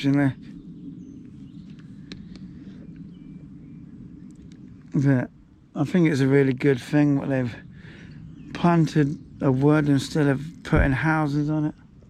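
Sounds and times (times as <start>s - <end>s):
wind rumble on microphone: 0.0s - 12.0s
faint clicks: 1.2s - 3.1s, 4.2s - 5.0s.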